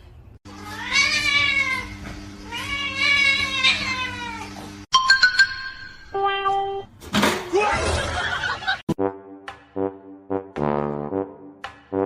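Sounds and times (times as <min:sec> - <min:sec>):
cat meowing: 0:00.6 - 0:04.6.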